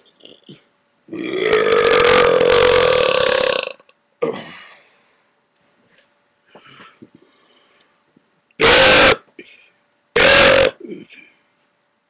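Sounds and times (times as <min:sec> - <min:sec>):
man burping loudly: 0:01.1 - 0:04.6, 0:08.6 - 0:09.3, 0:10.2 - 0:11.1.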